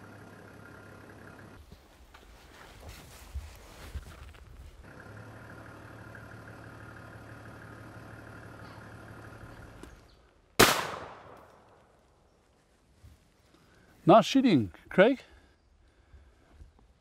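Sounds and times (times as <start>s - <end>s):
shotgun shot: 10.6s - 11.5s.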